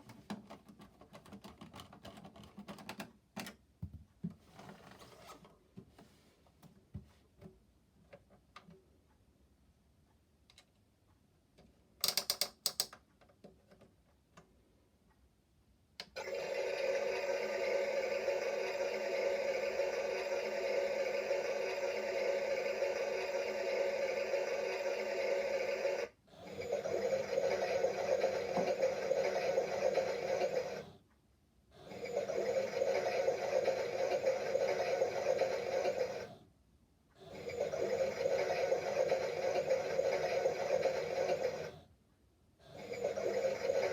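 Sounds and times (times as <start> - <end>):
toy plastic mechanism clicking: 12.0 - 13.0
small electric motor humming: 16.2 - 31.0, 31.8 - 36.4, 37.2 - 41.8, 42.7 - 43.9.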